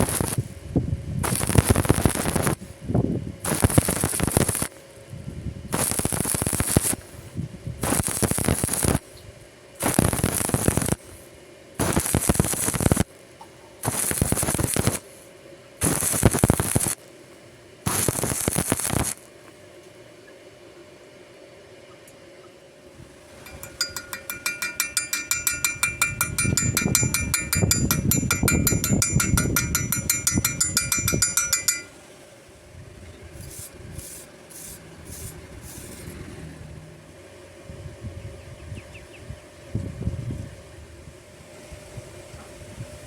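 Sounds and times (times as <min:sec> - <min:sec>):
welding arc crackling: 0:00.0 - 0:00.5, 0:01.2 - 0:02.6, 0:03.4 - 0:04.8, 0:05.7 - 0:09.0, 0:09.8 - 0:11.0, 0:11.8 - 0:13.1, 0:13.8 - 0:15.0, 0:15.8 - 0:17.0, 0:17.9 - 0:19.3, 0:23.4 - 0:31.9, 0:33.4 - 0:36.2.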